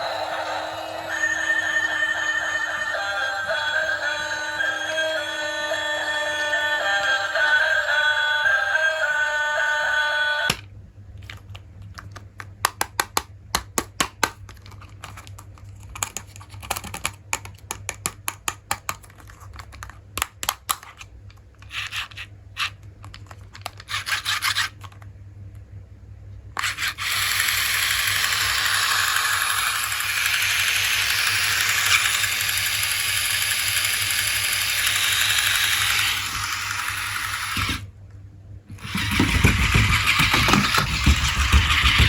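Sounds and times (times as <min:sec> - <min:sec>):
background music: 0:00.0 - 0:10.5
plastic toy pieces clicking: 0:11.2 - 0:25.0, 0:26.6 - 0:37.8.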